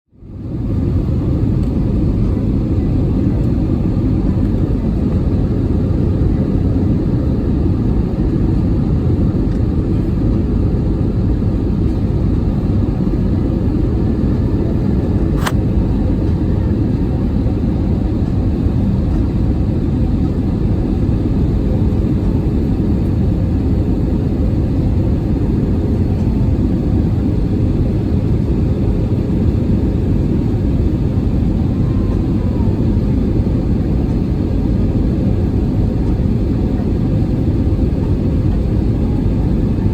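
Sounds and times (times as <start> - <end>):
airplane cabin engine rumble: 0.1 - 39.9
sharp click: 15.4 - 15.6.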